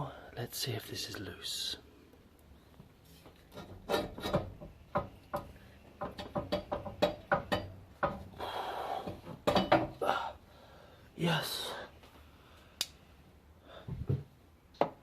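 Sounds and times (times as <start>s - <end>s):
metal knocks and clicks: 3.5s - 8.3s.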